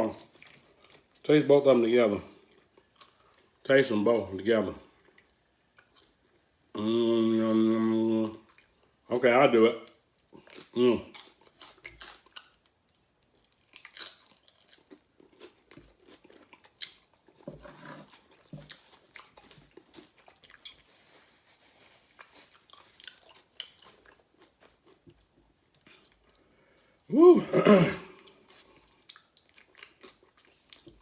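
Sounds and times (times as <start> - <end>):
crunching and chewing chips: 0.0 - 1.4, 2.3 - 3.7, 9.9 - 17.4, 18.0 - 26.6, 28.1 - 31.0.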